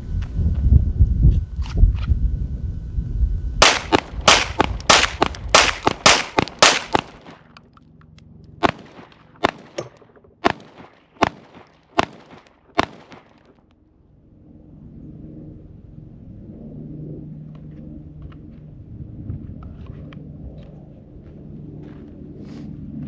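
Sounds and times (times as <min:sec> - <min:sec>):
pistol gunshots: 0:03.6 - 0:07.4, 0:08.6 - 0:13.3.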